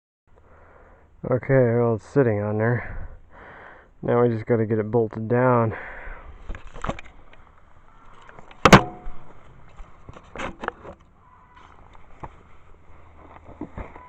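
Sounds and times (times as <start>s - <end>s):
sharp metal clank: 8.6s - 9.4s.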